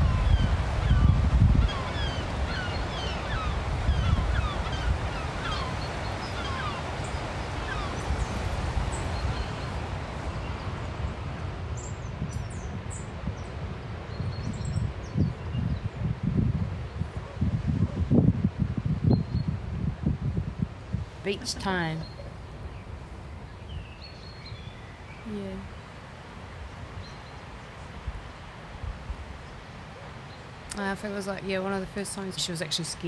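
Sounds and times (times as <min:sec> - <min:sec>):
birds chirping: 0:00.0 - 0:13.5, 0:21.1 - 0:33.0
wind: 0:00.0 - 0:33.0.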